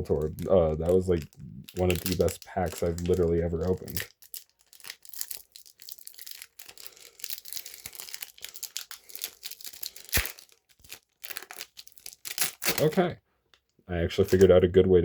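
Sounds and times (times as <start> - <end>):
foil pack crinkling and tearing: 0.0 - 13.0, 14.2 - 14.5.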